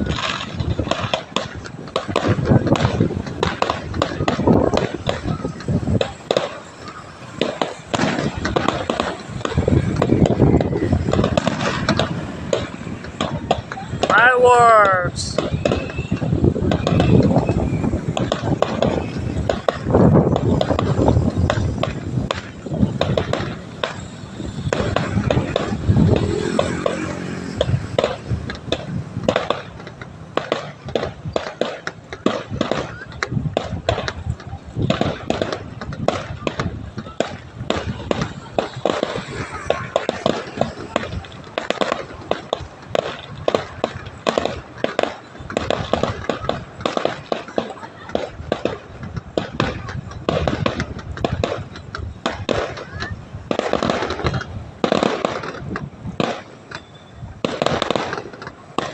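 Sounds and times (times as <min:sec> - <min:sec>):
firecrackers cracking: 0:00.0 - 0:58.9.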